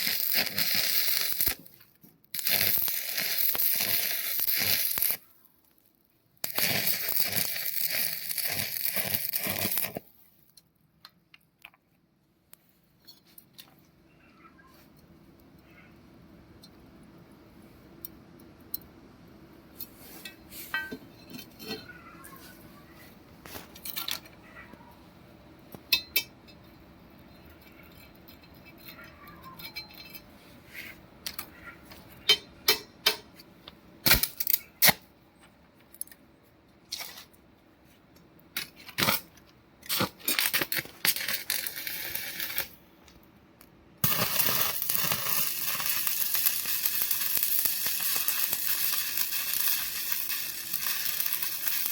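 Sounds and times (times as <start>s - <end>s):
welding arc crackling hiss: 0.0s - 5.2s, 6.4s - 10.1s, 40.4s - 42.8s, 44.0s - 51.9s.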